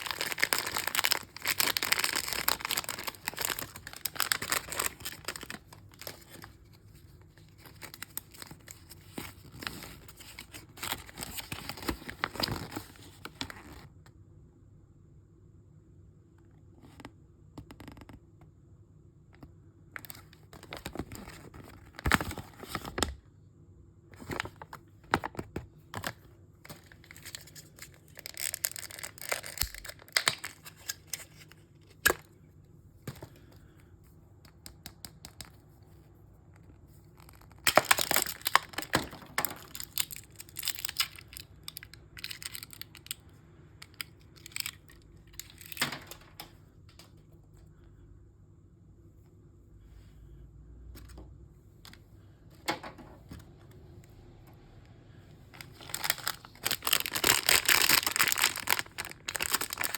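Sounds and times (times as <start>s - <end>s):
packaging tearing and crinkling: 0.0s - 6.6s, 7.5s - 13.8s, 26.0s - 32.2s, 37.2s - 43.2s, 43.9s - 46.2s, 55.6s - 59.9s.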